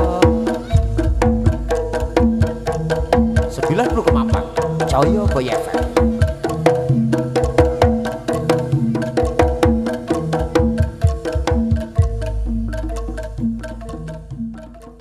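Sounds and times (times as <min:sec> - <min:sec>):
deep bass note: 0:00.0 - 0:06.1
loud percussive music with drums: 0:00.0 - 0:15.0.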